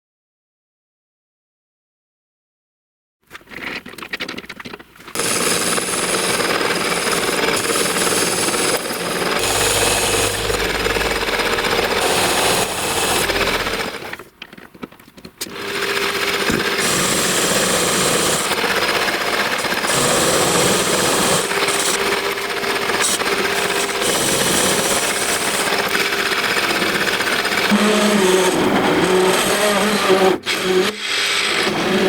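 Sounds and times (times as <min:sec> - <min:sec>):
power tool grinding metal: 0:05.2 - 0:14.2, 0:27.5 - 0:32.0.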